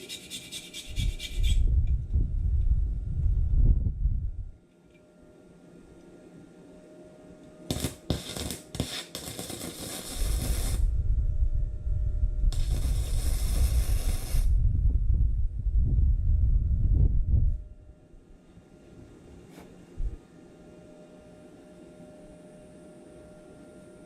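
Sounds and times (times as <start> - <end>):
low rumble: 1.4 - 4.6, 10.7 - 18.2
welder arc sizzling: 7.7 - 10.9, 12.5 - 14.6.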